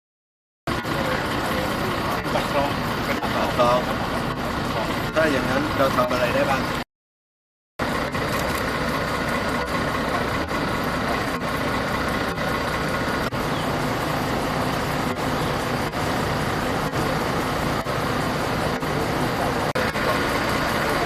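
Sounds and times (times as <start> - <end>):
large vehicle engine idling: 0.7 - 6.8, 7.8 - 21.0.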